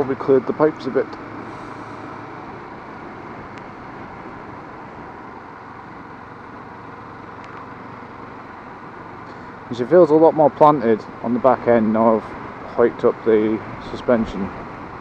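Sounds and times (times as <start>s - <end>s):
rider speaking: 0.0s - 1.3s, 9.6s - 14.6s
motorcycle engine: 0.0s - 15.0s.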